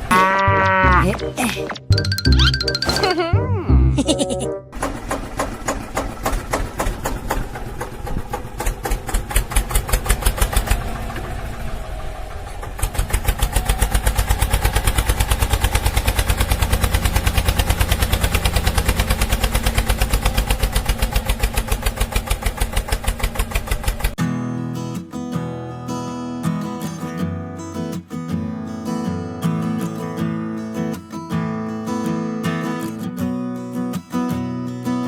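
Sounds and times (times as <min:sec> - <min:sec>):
small engine chugging: 0:04.8 - 0:24.2.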